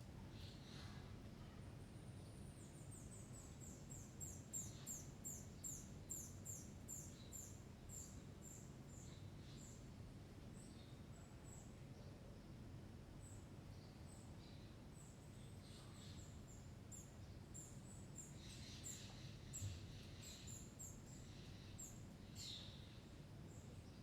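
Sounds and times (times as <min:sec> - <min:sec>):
faint bird chirps: 0:13.2 - 0:24.0.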